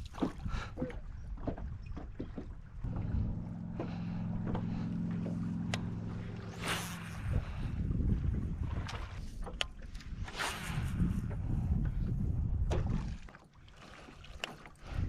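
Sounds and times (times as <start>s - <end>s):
knocks and clicks on boat: 0.0s - 6.6s, 8.6s - 10.3s, 11.2s - 13.4s
boat motor humming: 0.0s - 10.2s.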